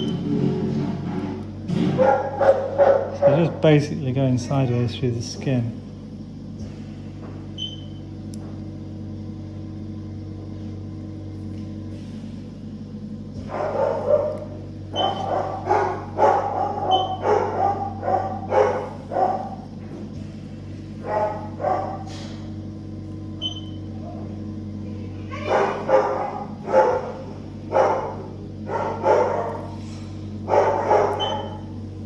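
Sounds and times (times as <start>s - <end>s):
steady low hum: 0.0s - 32.0s
dog barking: 2.0s - 3.5s, 13.4s - 19.6s, 21.0s - 22.4s, 25.3s - 29.8s, 30.4s - 31.7s.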